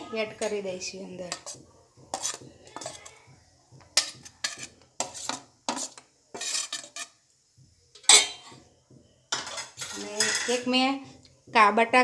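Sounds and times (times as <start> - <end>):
spoon clinking against dish: 8.0 - 8.6.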